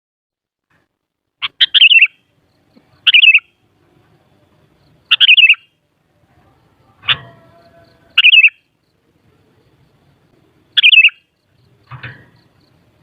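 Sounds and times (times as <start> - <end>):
bird singing quick notes: 1.4 - 2.2, 3.0 - 3.5, 5.1 - 5.6, 8.2 - 8.6, 10.8 - 11.2.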